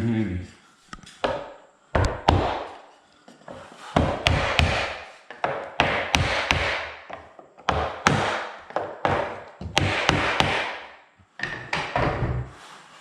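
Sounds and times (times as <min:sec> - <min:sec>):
hammer knocking on wood: 0:01.2 - 0:02.8, 0:04.0 - 0:10.8.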